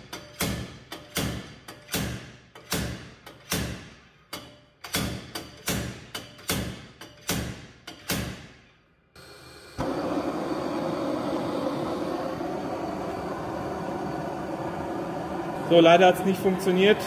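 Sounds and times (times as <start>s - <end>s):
slide hammer striking metal: 0.0s - 8.4s
steady loud noise: 9.8s - 17.0s.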